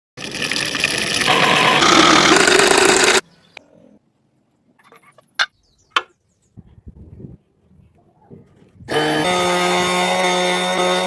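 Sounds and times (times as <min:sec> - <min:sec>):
scroll saw buzzing: 0:00.2 - 0:03.2, 0:08.9 - 0:11.0.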